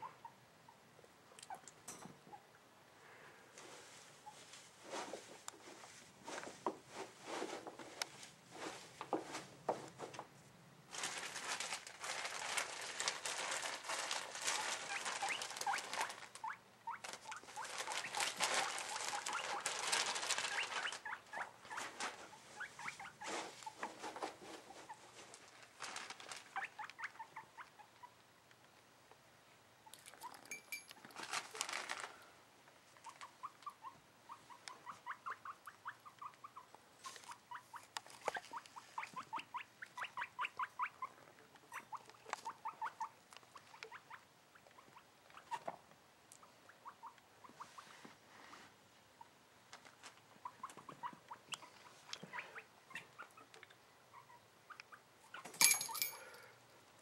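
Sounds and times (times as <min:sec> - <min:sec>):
guinea pig squeaking: 0:00.0 - 0:00.4, 0:01.4 - 0:02.6, 0:11.2 - 0:28.2, 0:29.8 - 0:31.7, 0:33.0 - 0:47.9, 0:49.2 - 0:55.8
cage bedding rustling: 0:03.5 - 0:10.3, 0:10.9 - 0:27.0, 0:30.3 - 0:32.3.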